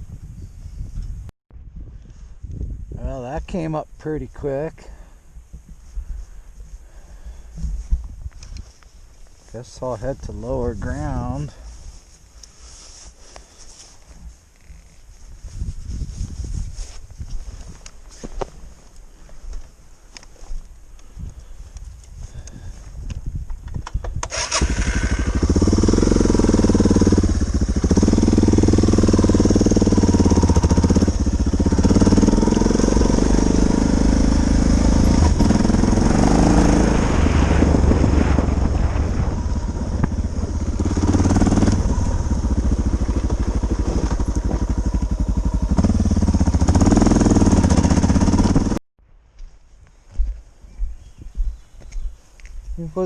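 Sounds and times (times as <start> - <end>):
motorcycle engine revving: 24.2 - 48.8.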